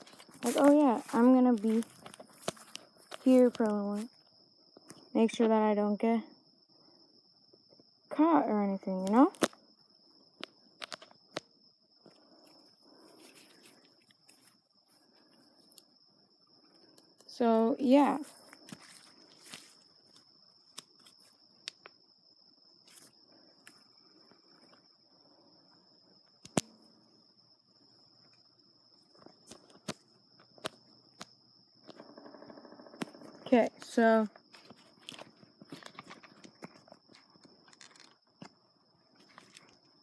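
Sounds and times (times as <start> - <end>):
soft rustle: 0.0 - 4.2, 12.2 - 15.8, 16.8 - 21.4, 22.8 - 24.9
high-pitched insect trill: 0.0 - 40.0
sharp snaps: 26.4 - 26.8.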